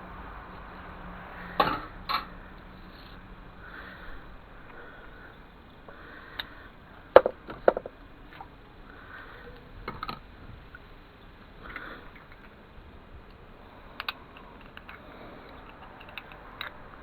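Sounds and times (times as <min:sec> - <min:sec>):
soft sniffing breaths: 0:02.8 - 0:07.0
small hard objects clattering: 0:07.2 - 0:08.0.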